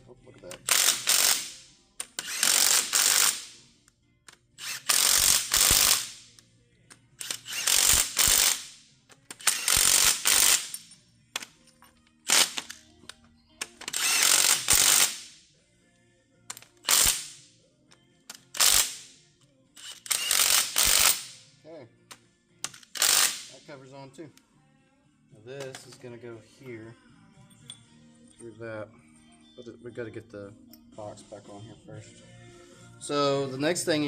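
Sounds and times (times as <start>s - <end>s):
ratchet wrench clicking: 0.6s - 3.6s, 4.3s - 6.4s, 7.2s - 11.5s, 13.8s - 15.3s, 16.5s - 17.4s, 18.3s - 19.1s, 19.8s - 21.4s, 22.6s - 23.5s.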